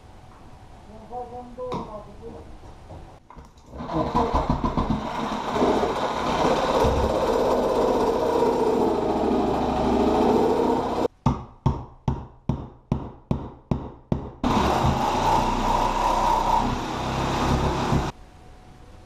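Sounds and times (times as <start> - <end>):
knocks: 2.9 - 5.1
power tool motor running: 5.0 - 11.1, 14.4 - 18.1.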